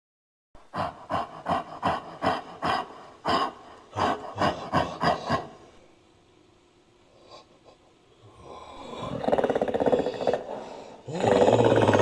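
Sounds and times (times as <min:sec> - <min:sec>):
breathy ape grunts: 0:08.5 - 0:12.0.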